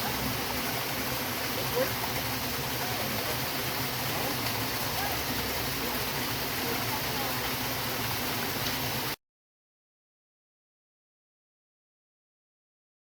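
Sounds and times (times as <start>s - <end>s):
stream and waterfall rushing: 0.0s - 9.2s.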